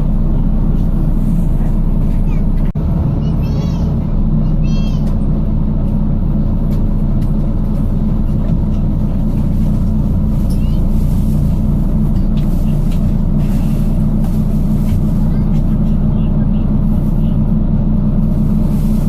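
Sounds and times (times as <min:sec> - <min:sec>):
bus diesel engine drone: 0:00.0 - 0:19.0.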